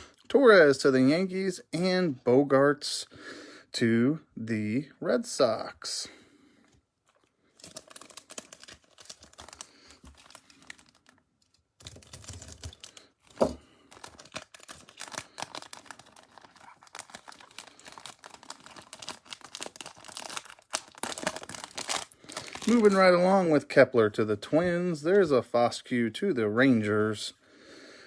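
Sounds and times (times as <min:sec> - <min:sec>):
cards rustling: 0:07.0 - 0:23.2
foil wrapper crinkling and tearing: 0:07.1 - 0:23.4.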